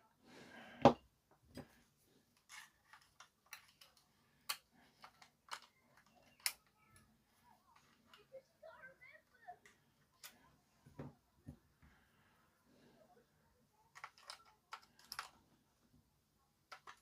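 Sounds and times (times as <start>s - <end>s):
plastic toy clicks and taps: 2.5s - 6.7s, 13.9s - 15.4s, 16.7s - 17.0s.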